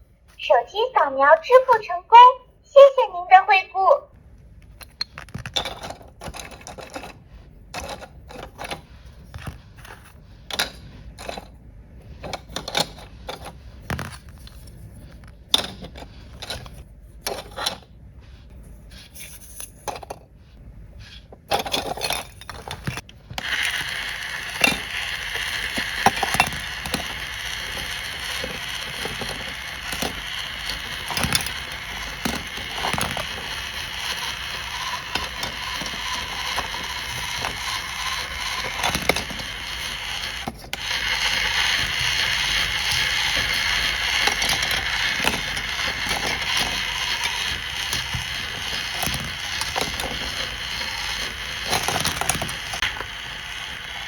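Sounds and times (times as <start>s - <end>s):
plastic toy pieces clattering: 5.0s - 7.2s, 21.5s - 54.0s.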